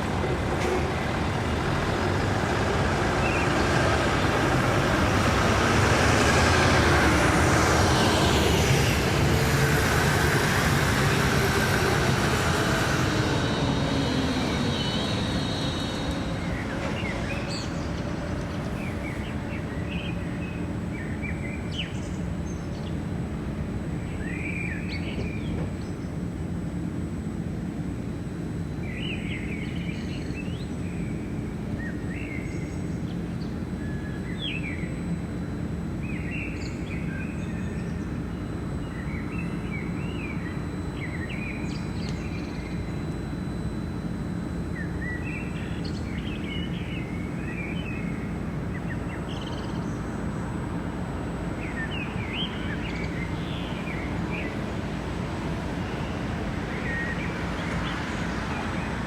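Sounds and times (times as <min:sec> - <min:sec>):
low machinery hum: 0:00.0 - 0:59.0
birds chirping and trilling: 0:07.2 - 0:23.0.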